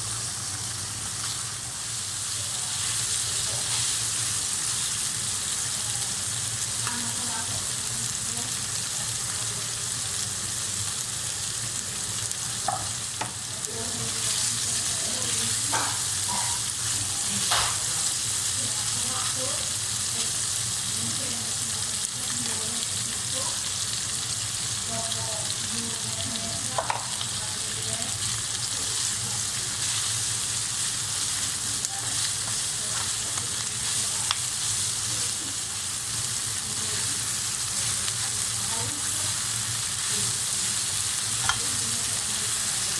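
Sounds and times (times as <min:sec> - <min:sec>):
food sizzling in a pan: 0:00.0 - 0:42.9
utensil clicking against pan: 0:41.4 - 0:41.8.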